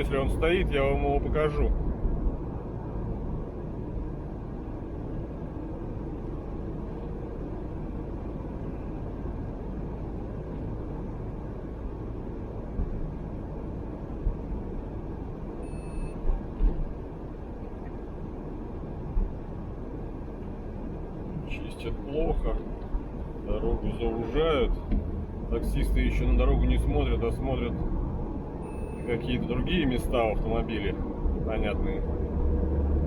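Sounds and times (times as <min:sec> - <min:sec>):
car cabin road and engine noise: 0:00.0 - 0:33.0
brief high beep: 0:15.6 - 0:16.2, 0:28.6 - 0:29.1.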